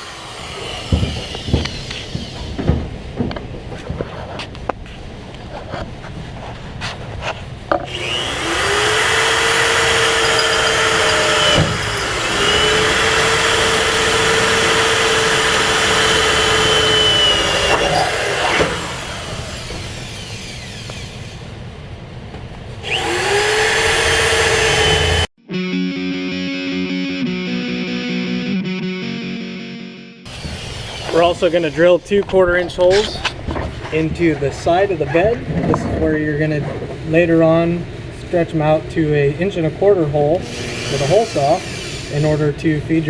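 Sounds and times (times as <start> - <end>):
electric drill drilling: 0.0 - 2.8, 7.9 - 21.4, 22.8 - 25.3, 30.3 - 31.8, 40.4 - 42.4.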